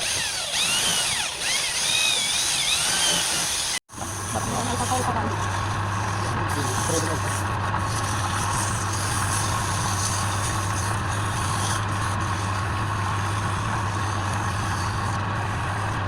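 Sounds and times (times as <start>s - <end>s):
lathe motor humming: 0.0s - 16.0s.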